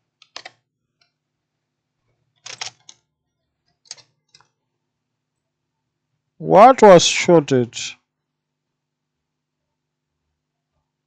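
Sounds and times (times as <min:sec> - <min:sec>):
small sharp clicks and taps: 0:02.4 - 0:04.6.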